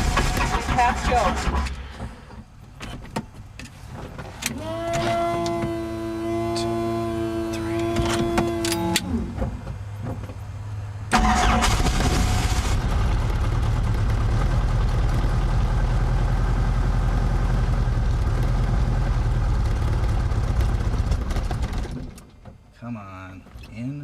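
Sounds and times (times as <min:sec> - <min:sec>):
helicopter starter burst: 0:00.0 - 0:02.0, 0:11.1 - 0:13.0.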